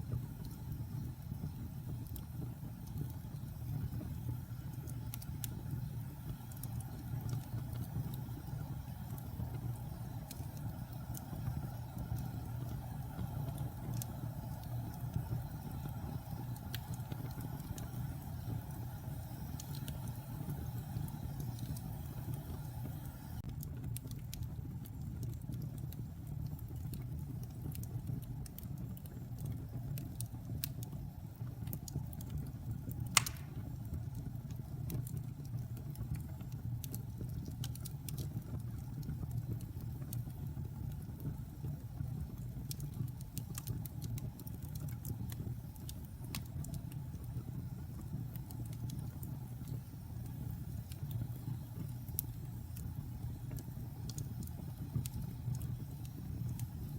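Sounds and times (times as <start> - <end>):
fire rumbling and crackling: 0.0 - 56.9
fire popping sharply: 33.1 - 33.8.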